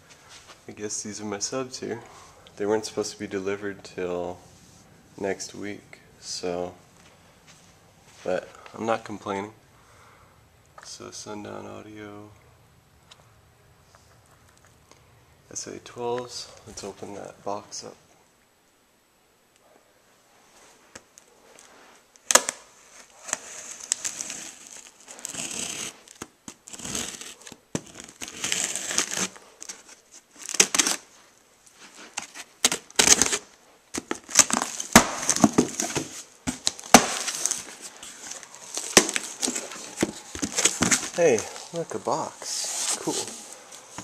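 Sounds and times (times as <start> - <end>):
packing material tearing and crinkling: 22.2 - 31.2, 31.9 - 41.9
cardboard box snapping: 34.0 - 37.6, 38.8 - 41.2.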